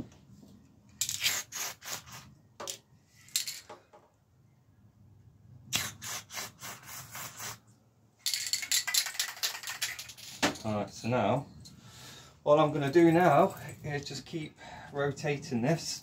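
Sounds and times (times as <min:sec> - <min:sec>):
aerosol can spraying: 0:01.1 - 0:02.3.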